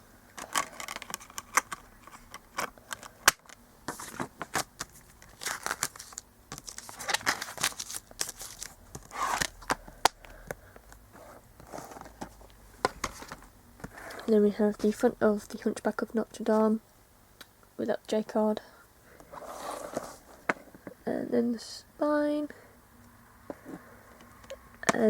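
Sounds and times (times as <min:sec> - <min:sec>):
crinkling rustles: 0:00.3 - 0:15.7, 0:19.2 - 0:20.6.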